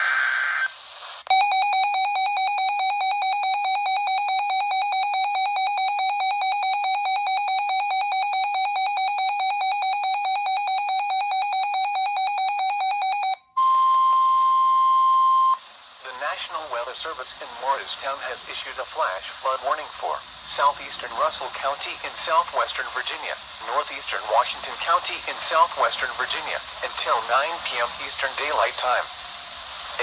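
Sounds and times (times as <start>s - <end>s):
data tone: 1.3s - 15.6s
rapidly pulsing electronic alarm beep: 1.3s - 15.6s
steady warning tone: 1.3s - 15.6s
radio static: 16.0s - 29.1s.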